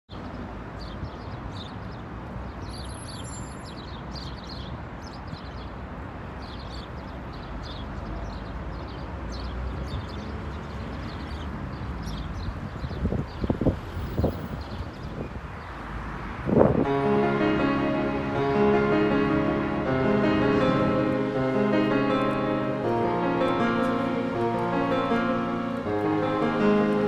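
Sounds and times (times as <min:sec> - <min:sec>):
small birds chirping: 0:00.1 - 0:05.8, 0:06.4 - 0:15.9
steady rushing background: 0:16.8 - 0:27.0.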